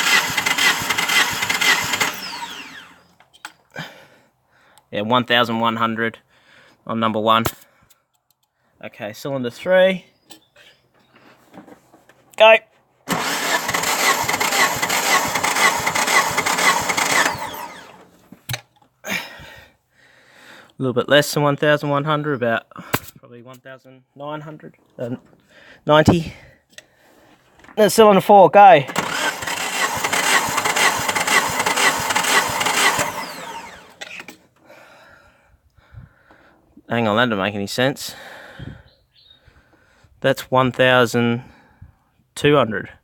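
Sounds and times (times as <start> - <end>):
engine cranking on starter motor: 0.0 - 3.3, 13.1 - 18.2, 28.8 - 34.5.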